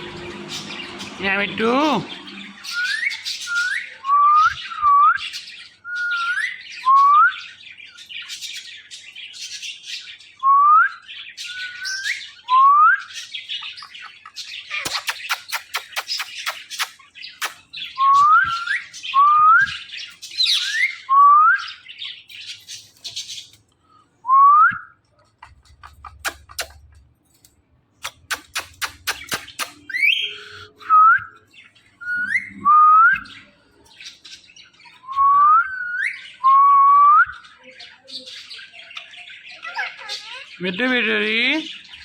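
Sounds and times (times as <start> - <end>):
parrot whistling: 0.0 - 5.2, 28.0 - 31.4, 32.0 - 33.6
parrot clicking chatter: 14.2 - 17.7, 25.4 - 27.0, 28.0 - 30.1.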